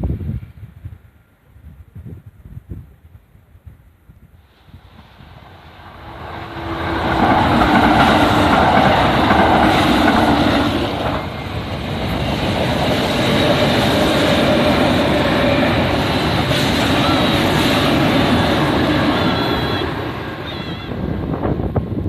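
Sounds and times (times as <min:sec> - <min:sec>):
electric train passing: 0:04.4 - 0:22.0.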